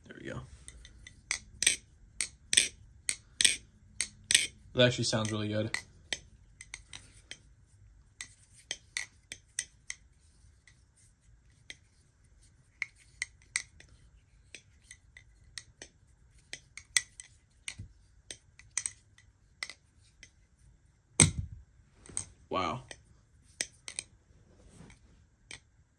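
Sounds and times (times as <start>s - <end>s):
butterfly knife clacking: 1.3s - 4.6s.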